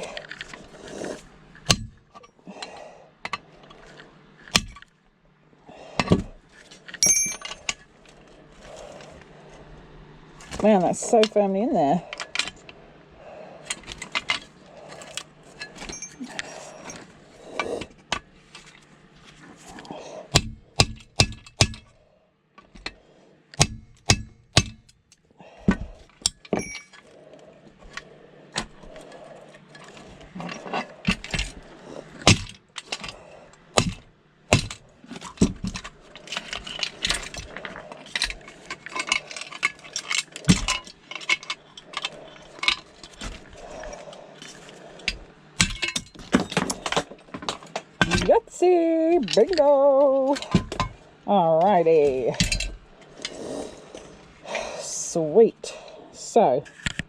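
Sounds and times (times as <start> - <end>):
metal clinking and scraping: 6.0 - 9.2, 13.6 - 20.0, 25.7 - 54.4
sharp knocks on metal: 20.3 - 21.9, 23.6 - 24.9.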